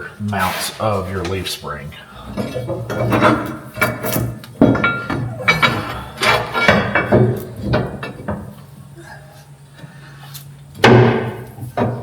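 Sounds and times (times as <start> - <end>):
metal parts knocking and clinking: 2.4 - 8.5.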